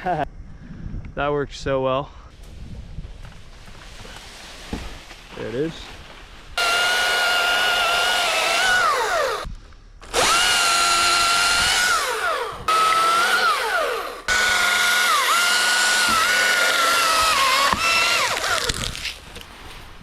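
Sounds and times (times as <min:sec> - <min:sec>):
chainsaw running at high revs: 0:06.6 - 0:09.5, 0:10.1 - 0:18.9.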